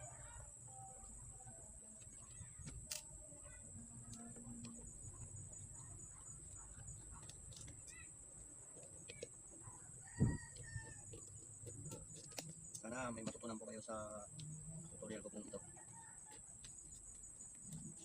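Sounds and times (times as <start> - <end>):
steady high-pitched hiss: 0.0 - 18.0
chickens and birds calling: 9.5 - 12.1.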